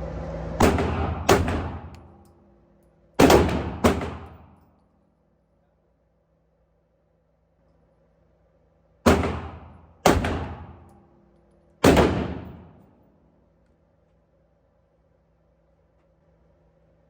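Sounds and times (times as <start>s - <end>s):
loud gunshots with echo: 0.6s - 2.1s, 3.2s - 4.6s, 9.1s - 10.9s, 11.8s - 12.8s.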